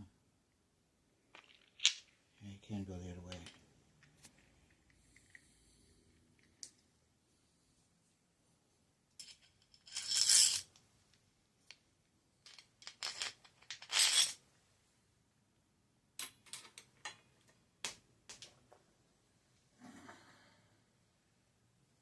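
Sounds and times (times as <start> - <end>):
metal parts clinking and scraping: 1.3 - 2.2, 9.2 - 10.7, 12.5 - 14.4.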